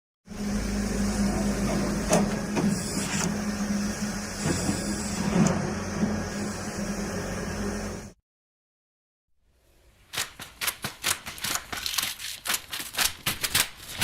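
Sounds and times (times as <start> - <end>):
mechanical hum: 0.3 - 8.2.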